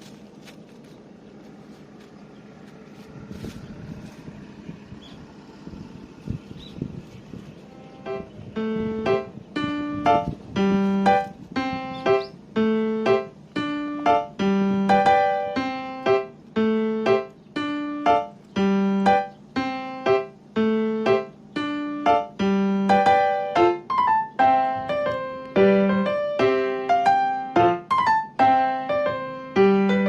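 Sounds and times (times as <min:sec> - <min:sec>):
light keyboard tune: 0:06.6 - 0:30.0.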